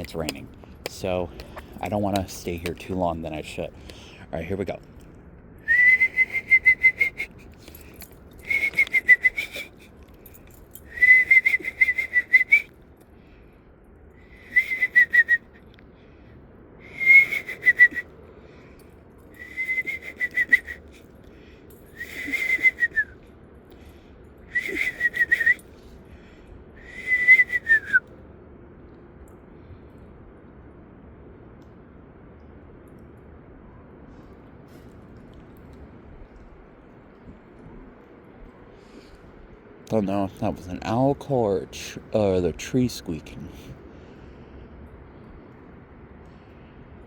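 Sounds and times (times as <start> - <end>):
imitation owl call whistle: 5.6 - 7.4, 8.4 - 9.9, 10.9 - 12.7, 14.3 - 15.6, 16.8 - 18.1, 19.4 - 21.0, 21.9 - 23.2, 24.5 - 25.6, 26.8 - 28.1.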